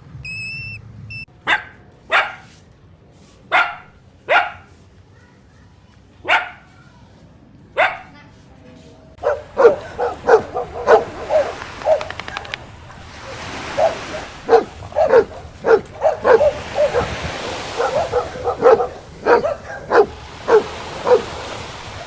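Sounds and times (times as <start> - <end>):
dog barking in high yaps: 1.4 - 2.5, 3.5 - 4.8, 6.2 - 6.9, 7.8 - 8.2, 9.2 - 22.0.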